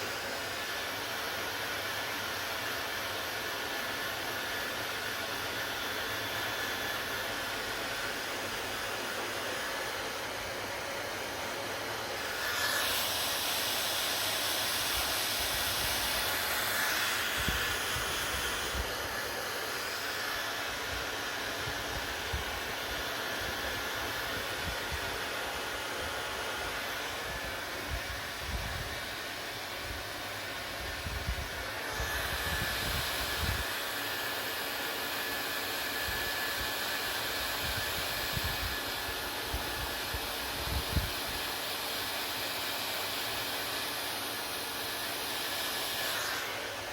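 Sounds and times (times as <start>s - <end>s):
hair dryer running: 0.0s - 46.9s.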